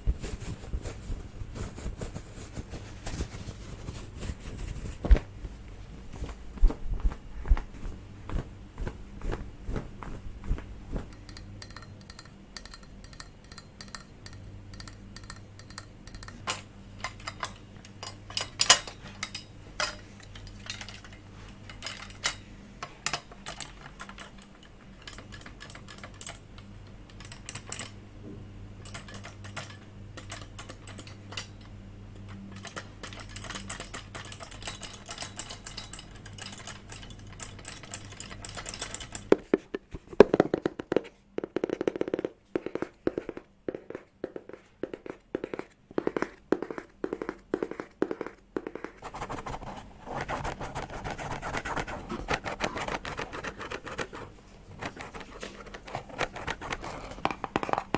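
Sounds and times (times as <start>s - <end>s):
soft steady scratching: 0.0s - 11.4s, 42.1s - 57.9s.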